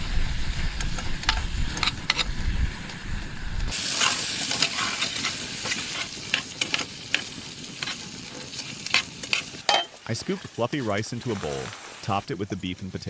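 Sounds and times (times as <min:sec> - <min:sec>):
stirring clicks and scrapes: 0:01.2 - 0:02.3, 0:03.9 - 0:10.6
meat and potatoes sizzling in pan: 0:03.7 - 0:10.9.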